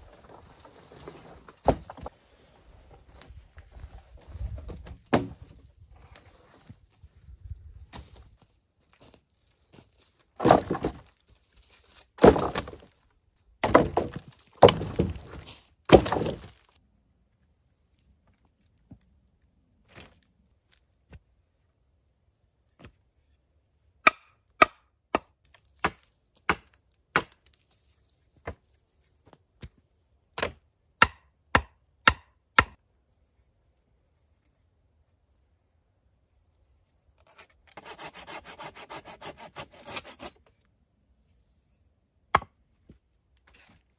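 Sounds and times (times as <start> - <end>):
hand saw on wood: 37.3 - 40.4
fast rasping strokes: 37.7 - 40.4.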